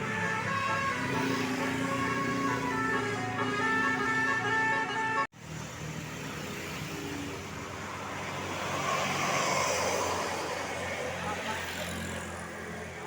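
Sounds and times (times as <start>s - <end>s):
multi-tone horn tune: 0.0s - 5.3s
vehicle engine and tyre noise: 0.0s - 13.0s.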